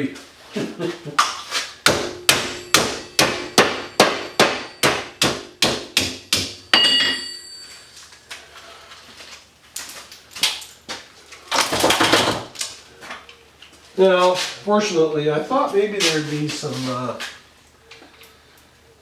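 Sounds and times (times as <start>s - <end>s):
hammer striking plastic casing: 1.9s - 6.6s.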